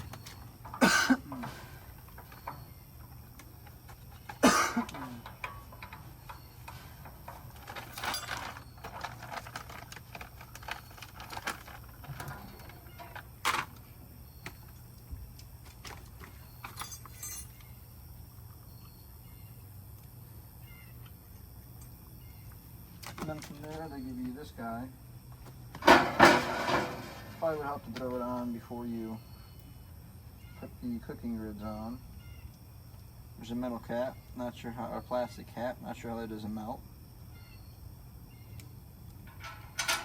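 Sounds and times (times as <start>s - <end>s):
metal grill parts clinking: 0.0s - 13.8s, 15.7s - 17.7s, 25.8s - 27.8s, 39.2s - 40.0s.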